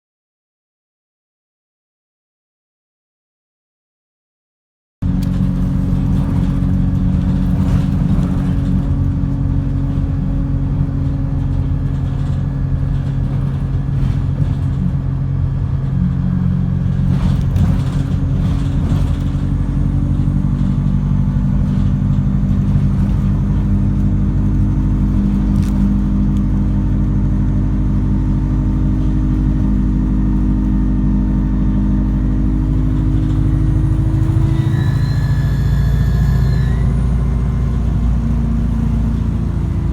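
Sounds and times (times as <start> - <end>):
bus engine droning: 5.0 - 39.9.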